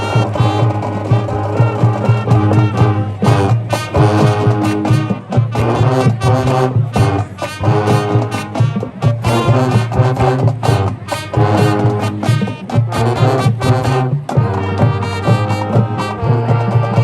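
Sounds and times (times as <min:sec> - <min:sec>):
marching band brass: 0:00.0 - 0:17.0
steady drum beat: 0:00.0 - 0:17.0.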